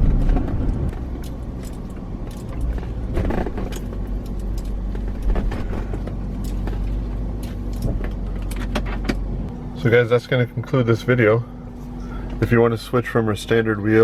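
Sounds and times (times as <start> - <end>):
car engine and road rumble: 0.0 - 14.0
light rattling clicks: 0.4 - 9.2.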